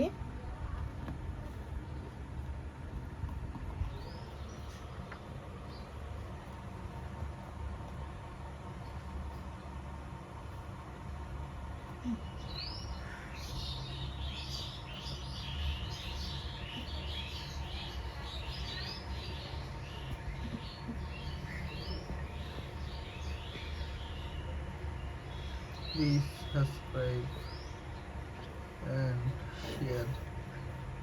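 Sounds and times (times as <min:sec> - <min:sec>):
low background noise: 0:00.0 - 0:31.0
small birds chirping: 0:00.0 - 0:31.0.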